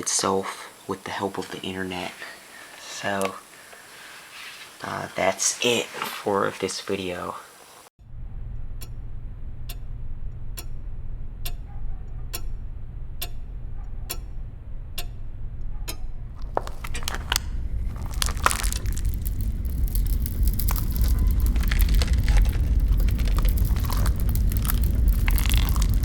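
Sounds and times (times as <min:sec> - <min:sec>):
crackling and rustling: 0:00.7 - 0:07.9, 0:16.4 - 0:26.0
low hum: 0:08.0 - 0:26.0
clock ticking: 0:11.4 - 0:16.1.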